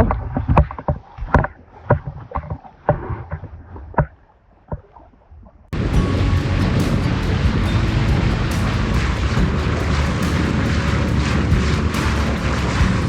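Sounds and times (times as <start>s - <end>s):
loud steady sound: 5.8s - 13.0s
low wind-like rumble: 5.8s - 13.0s.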